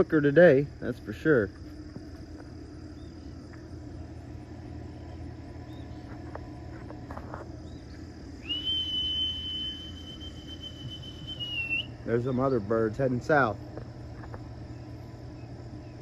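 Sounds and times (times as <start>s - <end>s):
faint outdoor background: 0.0s - 16.0s
low hum: 0.0s - 16.0s
high whistle: 8.4s - 12.1s.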